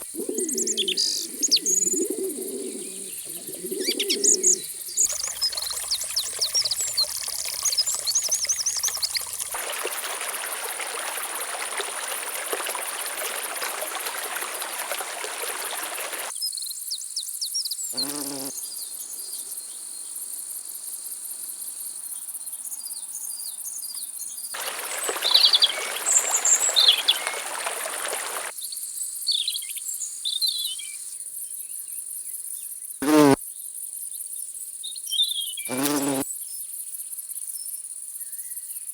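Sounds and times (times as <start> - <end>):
bird chirps: 0.0 - 9.5, 24.6 - 28.5
insects buzzing: 0.0 - 16.3, 18.0 - 19.4, 24.6 - 28.5, 33.0 - 33.4, 35.7 - 36.2
brief low calls: 0.1 - 4.9
rushing hiss: 24.6 - 28.5.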